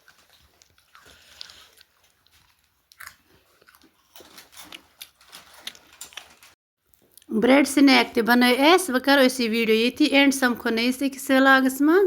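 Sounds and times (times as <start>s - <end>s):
crunchy snack chewing: 0.0s - 7.3s.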